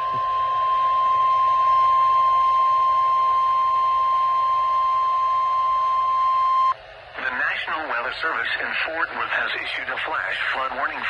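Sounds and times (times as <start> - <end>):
steady high alarm tone: 0.0 - 6.8
radio hiss: 7.1 - 11.0.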